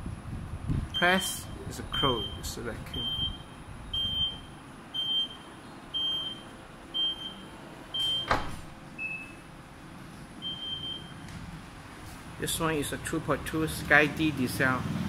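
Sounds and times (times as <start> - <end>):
warning buzzer beeps: 1.0 - 8.4, 10.4 - 11.2
tailgate latching shut: 8.2 - 8.8.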